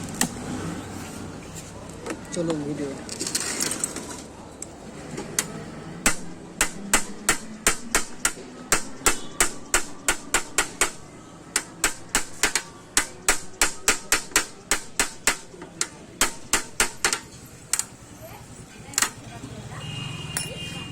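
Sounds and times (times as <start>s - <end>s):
tool tapping glass: 6.0s - 17.3s.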